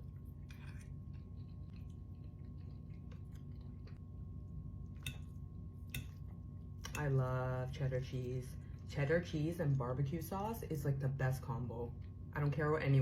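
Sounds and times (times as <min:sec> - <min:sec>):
person chewing: 0:00.0 - 0:04.1
low steady hum: 0:00.0 - 0:13.0.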